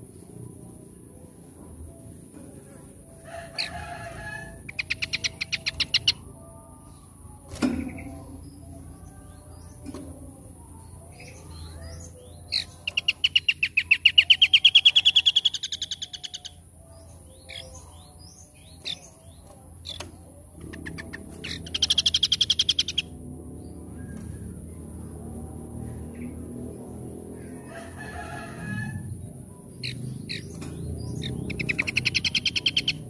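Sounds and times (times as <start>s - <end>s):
songbird trilling: 4.5s - 6.2s, 11.8s - 16.6s, 17.4s - 23.1s, 29.8s - 33.0s.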